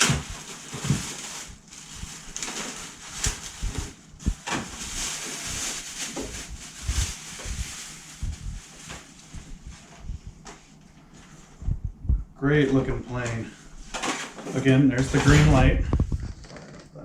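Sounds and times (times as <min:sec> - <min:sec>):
packaging rustling: 0:00.0 - 0:09.3.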